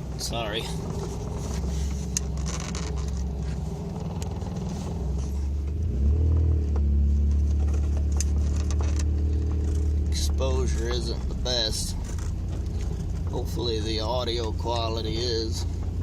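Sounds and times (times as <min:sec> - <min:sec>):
pickup engine and exhaust drone: 0:00.0 - 0:16.0.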